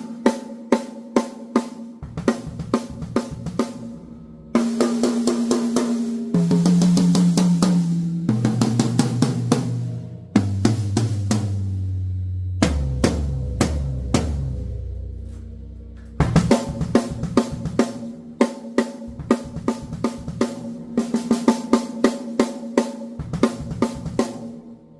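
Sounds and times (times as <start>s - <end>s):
drum kit groove: 0.0s - 24.9s
drum strokes: 0.0s - 24.9s
low drums ringing: 2.0s - 22.1s, 23.2s - 24.9s.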